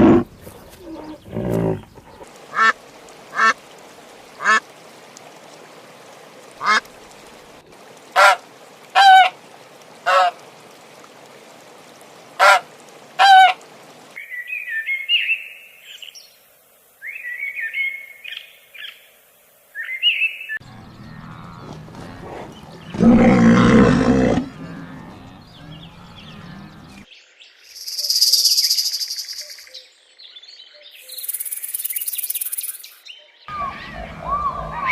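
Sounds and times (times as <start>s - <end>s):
waterfowl calling: 0.0s - 7.4s, 8.0s - 10.6s, 12.2s - 14.1s
small bird chirping: 27.7s - 29.9s, 31.0s - 33.0s.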